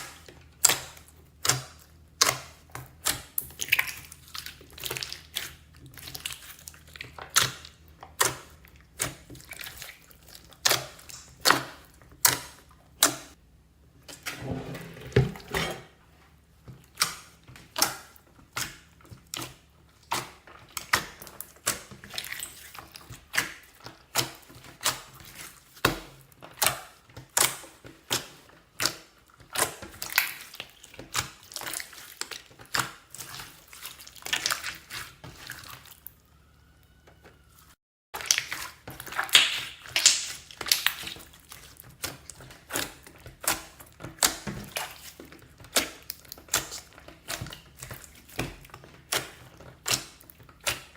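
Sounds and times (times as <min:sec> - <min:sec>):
slime squelching: 0:00.0 - 0:13.4, 0:16.7 - 0:36.3, 0:37.4 - 0:50.9
slime clicking and popping: 0:38.2 - 0:41.2.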